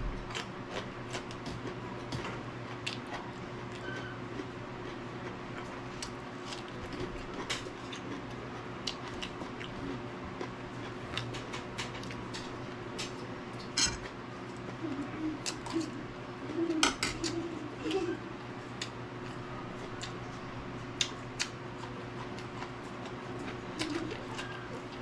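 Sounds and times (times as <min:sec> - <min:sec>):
steady low hum: 0:00.0 - 0:25.0
chewing: 0:00.3 - 0:16.0, 0:21.0 - 0:25.0
cutlery clicking: 0:13.8 - 0:14.0.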